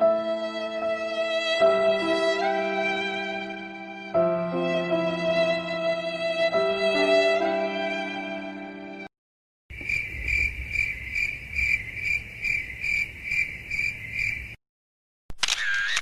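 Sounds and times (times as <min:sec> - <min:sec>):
sad violin phrase: 0:00.0 - 0:09.0
crickets chirping: 0:09.7 - 0:14.6.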